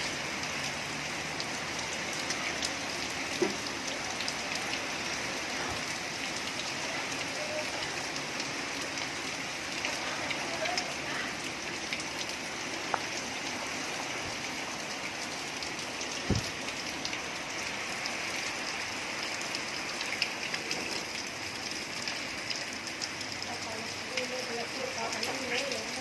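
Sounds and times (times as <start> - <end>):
raindrops ticking on surfaces: 0.0 - 26.0
steady rain hiss: 0.0 - 26.0
low thump: 16.3 - 16.6.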